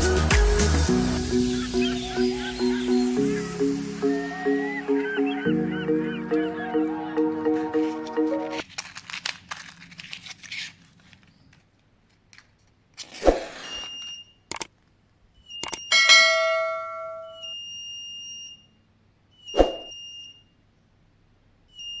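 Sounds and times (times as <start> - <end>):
high-pitched buzzer beep: 15.6 - 18.8
ringing metallic clang: 15.9 - 17.6.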